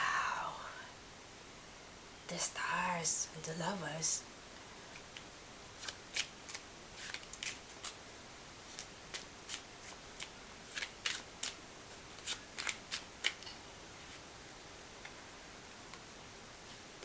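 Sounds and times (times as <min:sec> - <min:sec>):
cards shuffling and snapping: 0:05.0 - 0:08.0, 0:08.7 - 0:11.6, 0:12.2 - 0:13.5.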